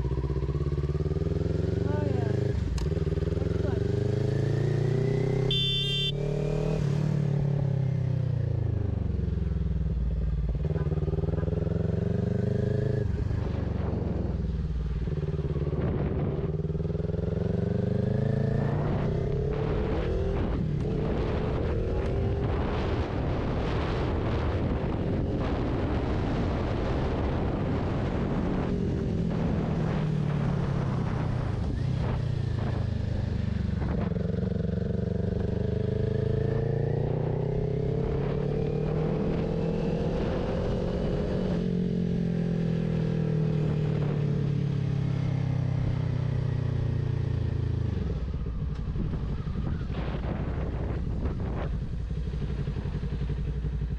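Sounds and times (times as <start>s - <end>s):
motorcycle engine revving: 0.0s - 53.9s
wind rushing over microphone: 12.0s - 42.9s, 47.3s - 53.9s.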